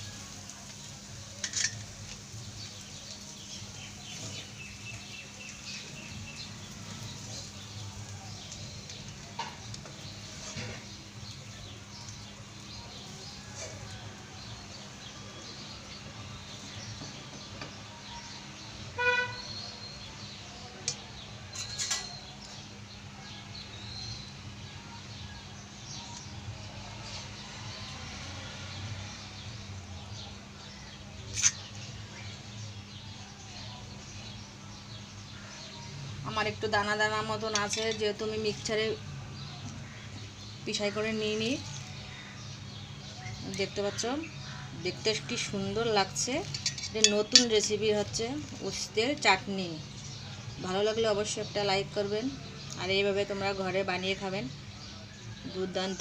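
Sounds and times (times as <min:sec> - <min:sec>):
birds chirping: 0:00.0 - 0:56.0
vehicle horn toot: 0:19.0 - 0:19.5.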